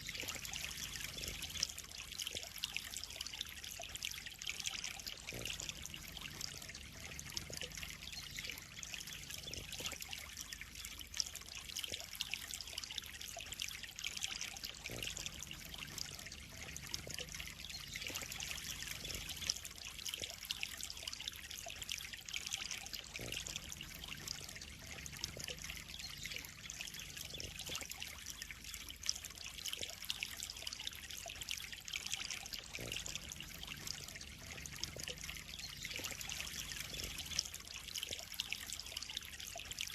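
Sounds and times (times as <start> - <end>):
water trickling into pond: 0.0 - 39.9.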